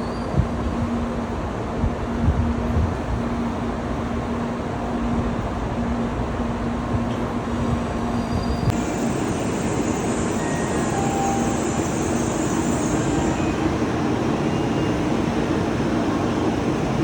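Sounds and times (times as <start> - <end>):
train rumble and air rush: 0.0 - 17.0
high hiss: 8.7 - 14.9.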